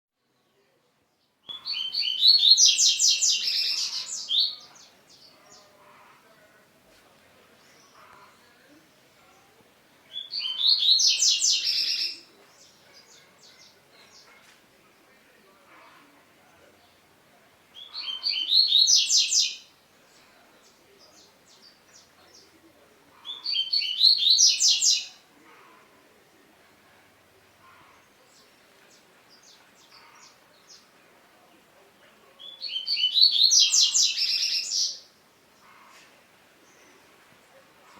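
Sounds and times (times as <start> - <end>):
bird chirping song: 0.2 - 6.1, 10.1 - 15.6, 17.7 - 25.2, 32.3 - 36.0.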